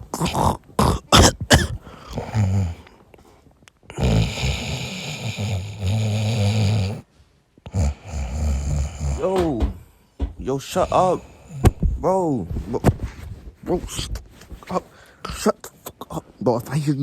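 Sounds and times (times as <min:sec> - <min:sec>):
person snoring: 0:00.0 - 0:03.0, 0:03.9 - 0:07.1, 0:07.7 - 0:09.8, 0:10.8 - 0:11.9.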